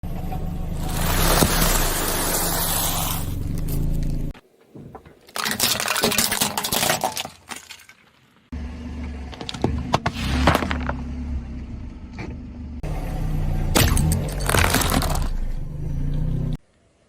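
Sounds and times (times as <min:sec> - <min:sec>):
low car engine hum: 0:00.0 - 0:04.4, 0:08.5 - 0:17.0.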